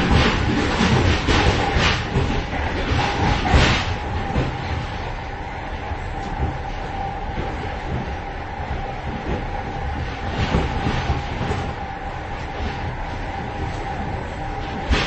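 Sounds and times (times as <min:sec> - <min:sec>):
clanks and knocks: 0:00.0 - 0:04.8
train running gear rumble and rattle: 0:00.0 - 0:15.0.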